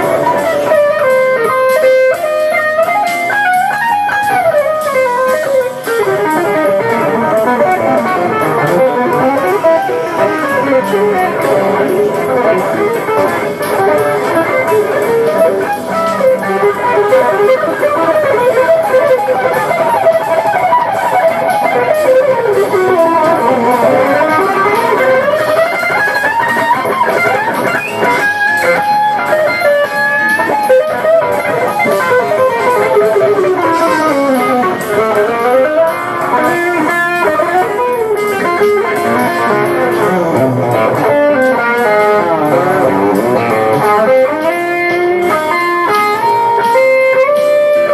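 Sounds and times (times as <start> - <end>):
electric guitar fast scale runs: 0.0 - 47.9
jazz fusion music: 0.0 - 47.9.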